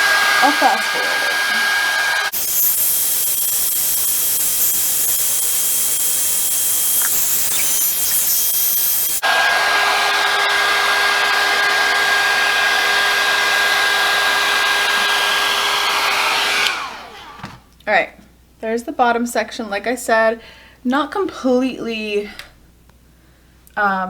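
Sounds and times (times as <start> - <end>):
hot air brush blowing: 0.0 - 17.6.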